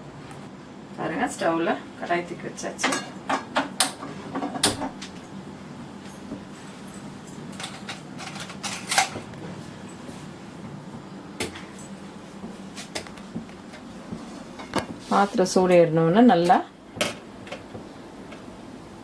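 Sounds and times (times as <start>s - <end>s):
steady low hum: 0.0s - 19.0s
kitchen clicks and knocks: 2.8s - 5.2s, 7.5s - 9.3s.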